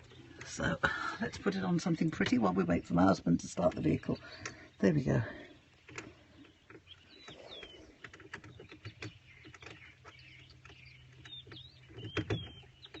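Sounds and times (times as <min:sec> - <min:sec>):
birds whistling: 0:00.0 - 0:13.0
faint clicks: 0:03.5 - 0:04.8, 0:05.6 - 0:13.0.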